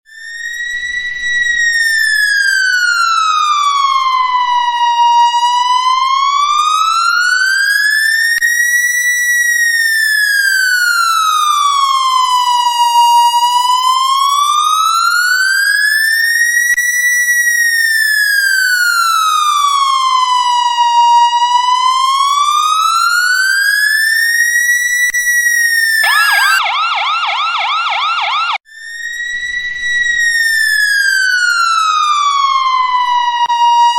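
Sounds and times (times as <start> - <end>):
police siren wailing: 0.1 - 33.9
siren fast warbling yelp: 25.7 - 28.6.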